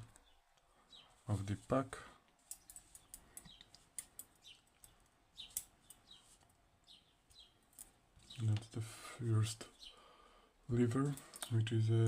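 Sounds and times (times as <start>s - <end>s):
bird chirping: 0.0s - 12.0s
small parts clicking and tapping: 2.2s - 6.6s, 7.3s - 8.7s, 11.0s - 11.6s.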